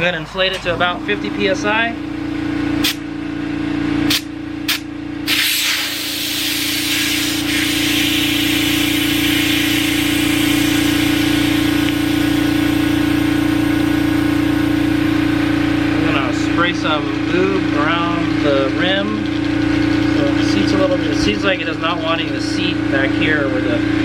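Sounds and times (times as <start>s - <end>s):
air compressor humming: 0.0s - 24.0s
air hissing into tire: 4.1s - 12.9s.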